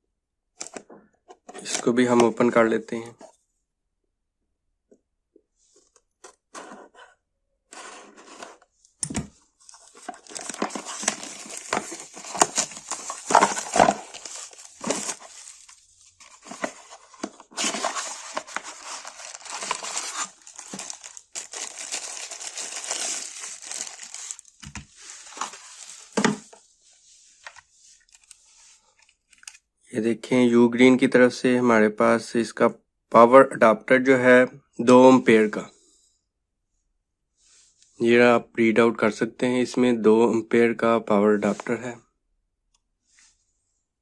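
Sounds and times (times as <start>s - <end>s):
packaging crinkling and tearing: 9.6s - 26.4s.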